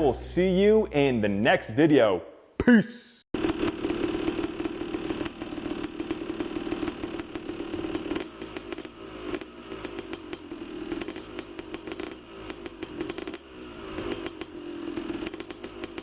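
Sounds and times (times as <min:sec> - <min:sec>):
two-stroke dirt bike engine: 0:03.4 - 0:16.0.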